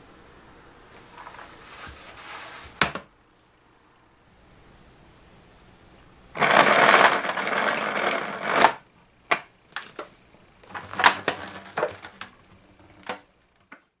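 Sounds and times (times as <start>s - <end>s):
dense rattling crunching noise: 6.4s - 8.8s, 10.7s - 13.1s.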